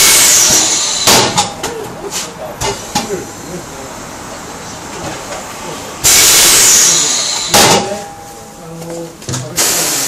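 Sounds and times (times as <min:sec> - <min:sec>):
compressed air hissing: 0:00.0 - 0:01.4, 0:06.0 - 0:07.6
sharp blast of air: 0:00.0 - 0:01.5, 0:06.0 - 0:07.8.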